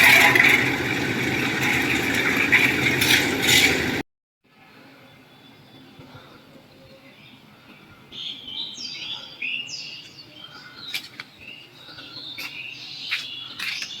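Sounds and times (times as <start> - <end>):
birds chirping: 5.0 - 14.0.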